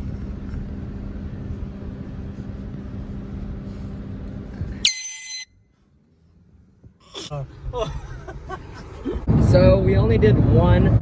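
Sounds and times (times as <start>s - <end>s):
low engine rumble: 0.0s - 4.9s, 5.5s - 11.0s
handheld air horn blast: 4.8s - 5.6s.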